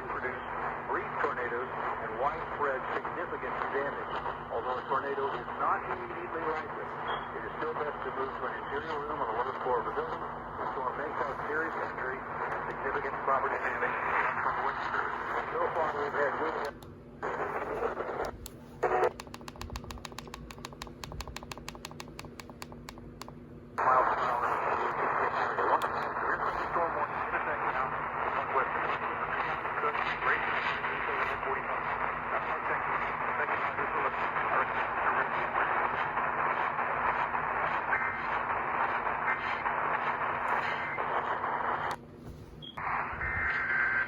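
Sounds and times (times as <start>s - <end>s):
radio static hiss: 0.0s - 21.3s, 22.0s - 44.0s
rapid even clicking: 18.2s - 23.4s.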